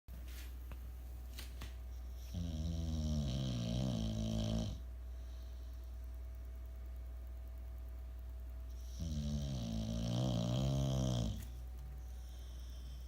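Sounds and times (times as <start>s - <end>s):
steady low hum: 0.1s - 13.0s
pet snoring with whistling edge: 2.3s - 4.8s, 8.9s - 11.4s.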